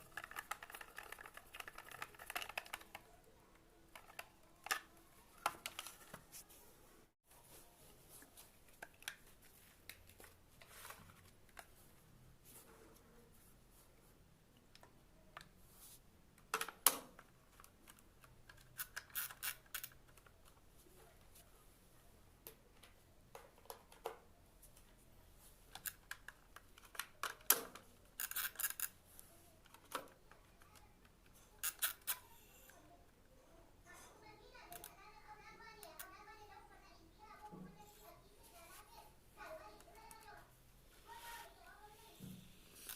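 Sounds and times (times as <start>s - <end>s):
small parts scraping rattles: 0.0s - 3.0s, 18.5s - 20.3s, 25.7s - 29.0s, 29.6s - 32.8s, 42.7s - 42.9s
small hard parts clicking: 0.0s - 3.1s, 16.5s - 20.6s, 25.7s - 29.0s, 29.6s - 32.8s.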